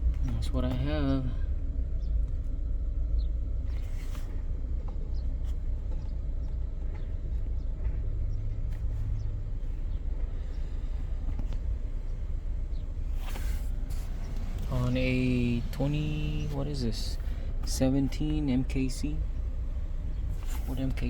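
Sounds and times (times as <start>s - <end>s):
car idling rumble: 0.0s - 21.0s.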